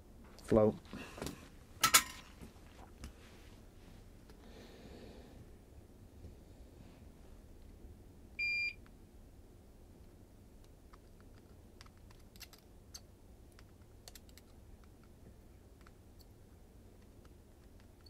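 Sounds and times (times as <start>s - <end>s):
faint crackles and ticks: 10.0s - 18.0s.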